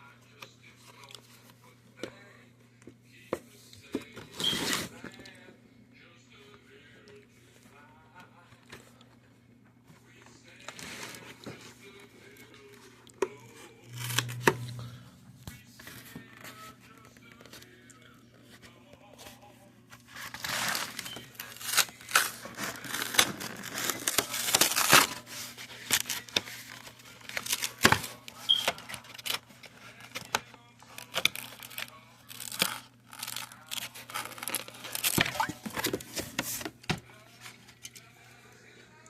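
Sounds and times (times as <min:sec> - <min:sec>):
packaging tearing and crinkling: 0:13.9 - 0:14.7, 0:20.1 - 0:36.6.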